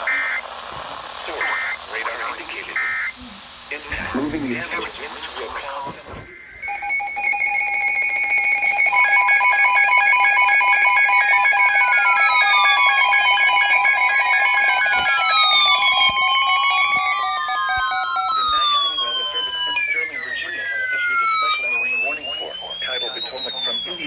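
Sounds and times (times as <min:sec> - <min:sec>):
steady and beeping alarm tones: 0:00.0 - 0:05.8, 0:06.4 - 0:24.0
falling siren-like sweeps: 0:06.6 - 0:24.0.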